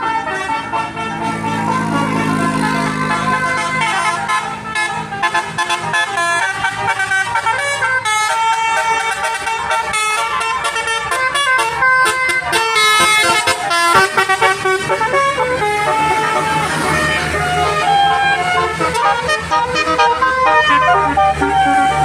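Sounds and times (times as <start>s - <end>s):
musical air horns: 0.0s - 22.0s.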